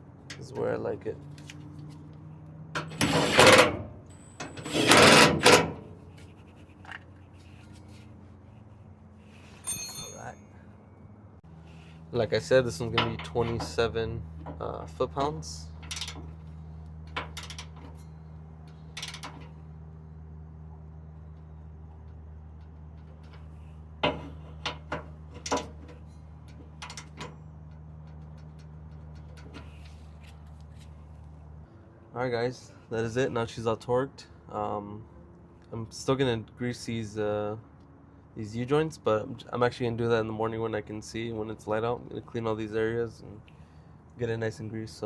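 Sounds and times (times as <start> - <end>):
ratchet clicking: 15.9 - 16.3, 17.2 - 17.8, 19.0 - 19.4, 26.8 - 27.2
faint metallic wrench ticks: 17.4 - 17.7.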